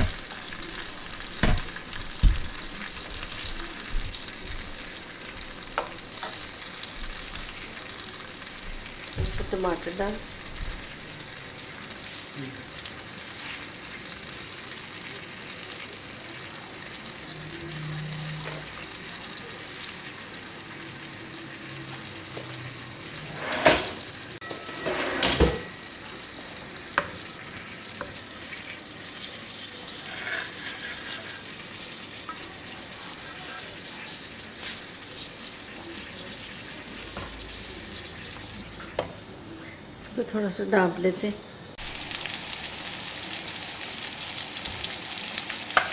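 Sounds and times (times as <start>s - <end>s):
utensil clattering against pan: 0.0s - 8.2s, 8.8s - 11.1s, 23.2s - 25.8s
chicken sizzling in oil: 0.0s - 45.9s.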